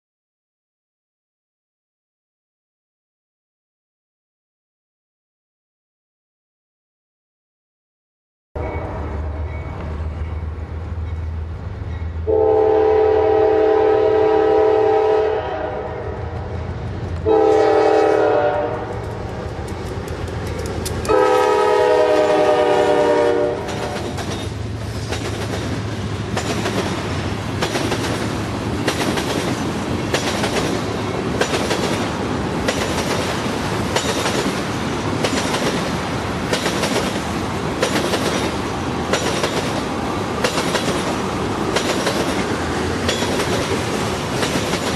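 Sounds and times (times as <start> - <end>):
diesel locomotives rumbling: 8.6 - 44.9
multi-tone train horn: 12.2 - 16.4, 17.2 - 19.1, 21.0 - 24.2
wheels clacking over rail joints: 19.0 - 21.2, 23.6 - 44.9.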